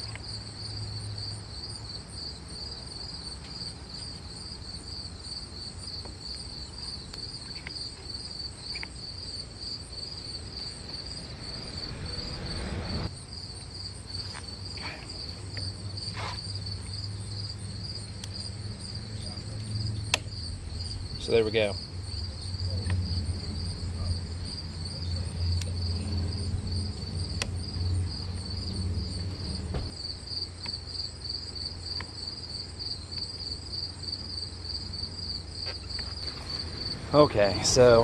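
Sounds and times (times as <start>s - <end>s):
crickets chirping: 0.0s - 38.0s
low rumble: 36.2s - 38.0s.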